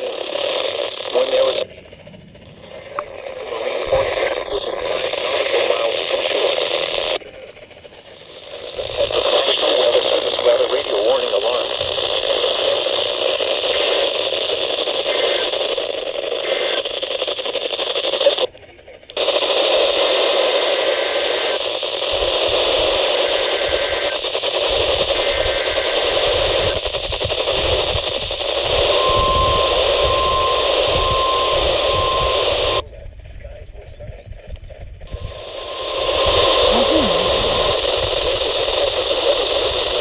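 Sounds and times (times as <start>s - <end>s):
radio static hiss: 0.0s - 40.0s
faint tones: 27.4s - 34.2s, 35.1s - 39.9s
short beeps: 28.6s - 32.8s.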